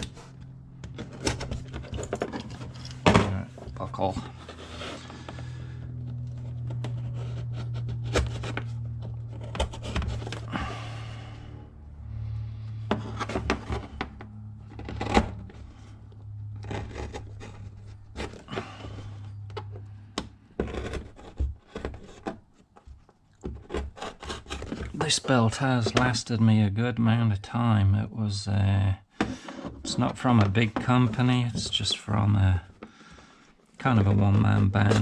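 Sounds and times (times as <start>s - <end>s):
metal and leather clicks and scrapes: 0.0s - 10.8s, 12.8s - 26.2s
low hum: 0.0s - 21.3s.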